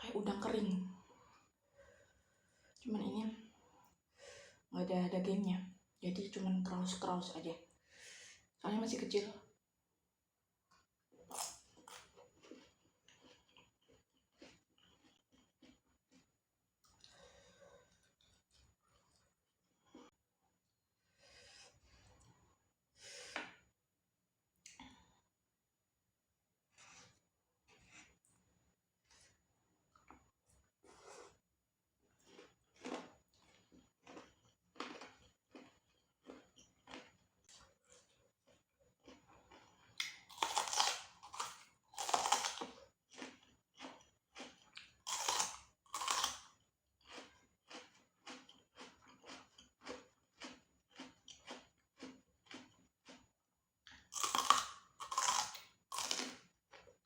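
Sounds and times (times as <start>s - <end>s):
breathing: 1.0s - 2.8s, 3.5s - 4.7s, 7.8s - 8.5s, 17.0s - 18.2s, 21.0s - 23.6s
crunchy food being chewed: 10.7s - 20.2s, 32.0s - 57.0s.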